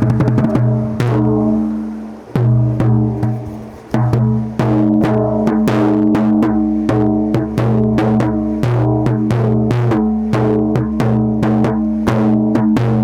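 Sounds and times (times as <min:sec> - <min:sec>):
drum hits: 0:00.0 - 0:01.6, 0:02.4 - 0:12.9
deep held bass notes: 0:00.0 - 0:13.0.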